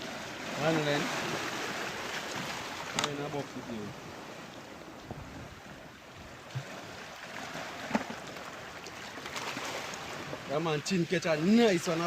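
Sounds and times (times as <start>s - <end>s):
sea water washing: 0.0s - 12.0s
wind on microphone: 3.8s - 7.0s.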